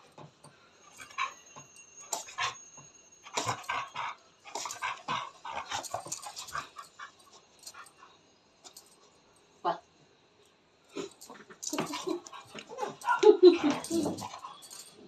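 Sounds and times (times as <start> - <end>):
dog whining and yipping: 11.8 - 14.9.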